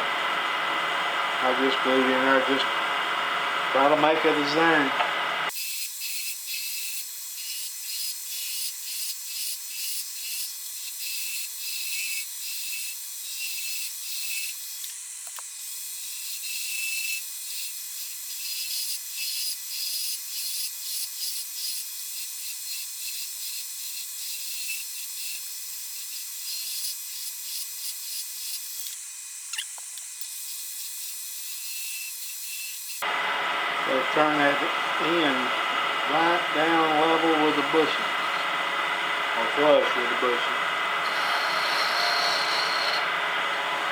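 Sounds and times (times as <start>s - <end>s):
lathe tool cutting wood: 0.0s - 14.7s, 30.6s - 43.9s.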